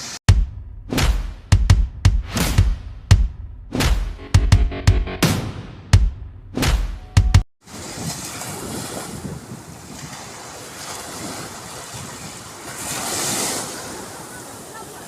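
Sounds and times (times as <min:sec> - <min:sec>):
music track: 0:03.8 - 0:07.4
sea waves washing ashore: 0:07.6 - 0:15.0
wind buffeting microphone: 0:07.7 - 0:14.6.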